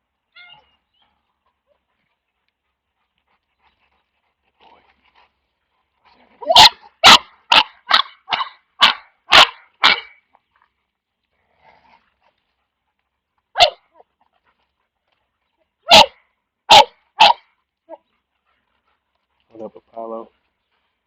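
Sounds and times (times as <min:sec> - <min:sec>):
dog barking: 0:06.4 - 0:10.2, 0:13.6 - 0:13.8, 0:15.9 - 0:17.5.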